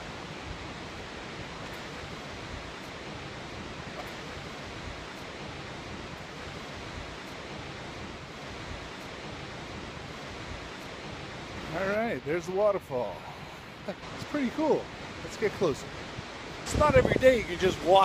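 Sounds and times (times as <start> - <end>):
waterfall roaring: 0.0 - 18.0.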